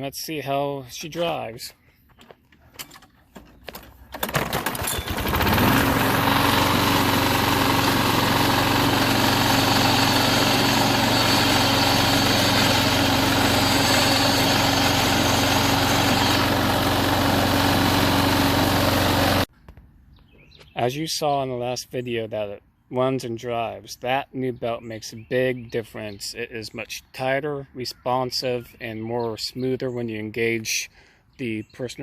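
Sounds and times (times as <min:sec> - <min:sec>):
lawn mower engine running: 0:03.6 - 0:19.5.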